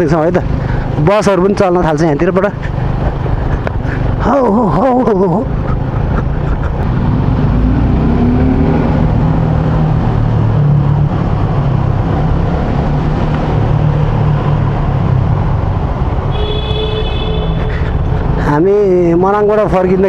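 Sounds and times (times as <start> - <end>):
motorcycle engine running: 0.0 - 8.3
wind and road noise: 0.0 - 20.0.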